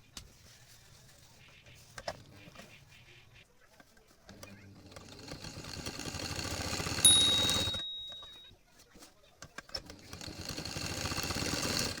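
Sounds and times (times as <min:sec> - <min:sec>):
sewing machine stitching: 0:04.8 - 0:07.8, 0:09.8 - 0:12.0
sharp high ringing tone: 0:07.0 - 0:08.5.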